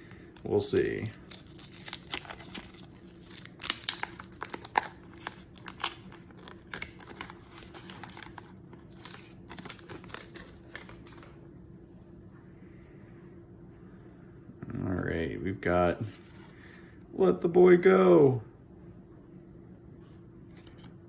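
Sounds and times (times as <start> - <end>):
wax paper wrapper tearing and crinkling: 0.0 - 11.3.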